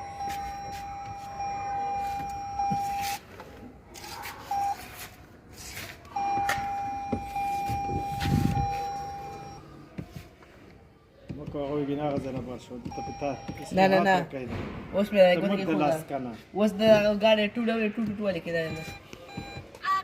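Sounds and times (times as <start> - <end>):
electronic warning tone: 0.0 - 3.2, 6.2 - 9.6, 12.9 - 14.1, 18.7 - 19.6.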